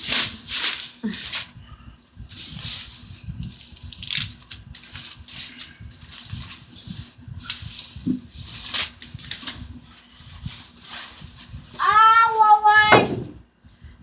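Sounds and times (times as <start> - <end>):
packaging rustling and crinkling: 0.0 - 1.6, 2.3 - 11.8.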